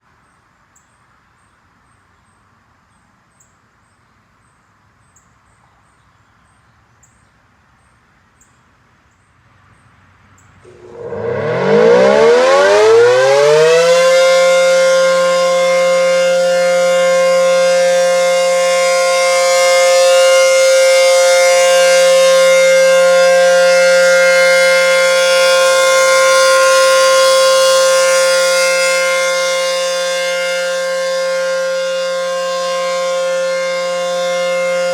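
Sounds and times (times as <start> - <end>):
civil defense siren: 10.6 - 34.9.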